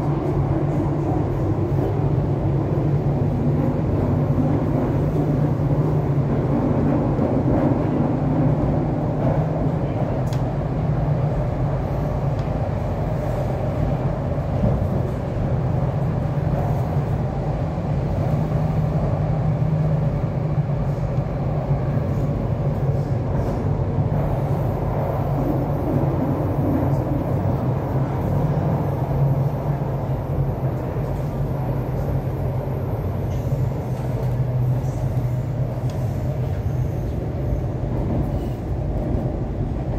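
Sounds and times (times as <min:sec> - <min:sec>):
train wheels rumbling on rail: 0:00.0 - 0:39.9.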